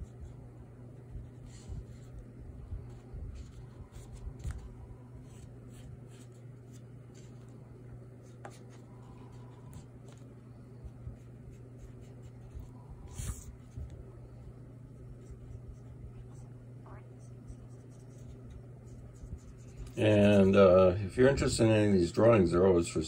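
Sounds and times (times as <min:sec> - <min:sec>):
low room hum: 0:00.0 - 0:23.0
pen scratching on paper: 0:11.2 - 0:13.8, 0:15.1 - 0:20.5.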